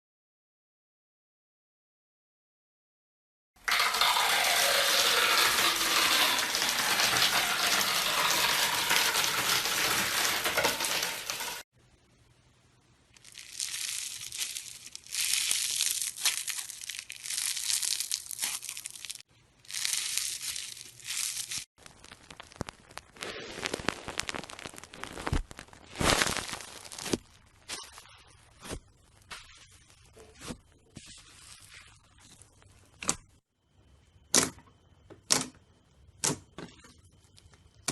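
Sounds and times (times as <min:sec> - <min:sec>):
slime squished by hand crackling: 0:13.2 - 0:27.2.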